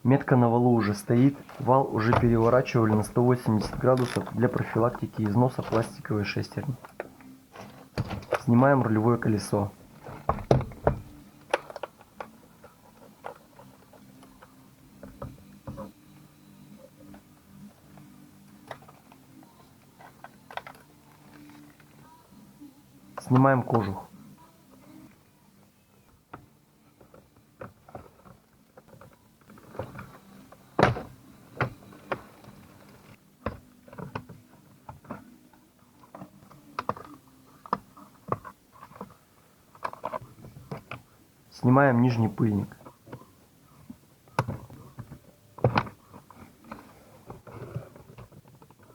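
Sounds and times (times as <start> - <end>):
metal parts knocking: 1.5 - 6.0.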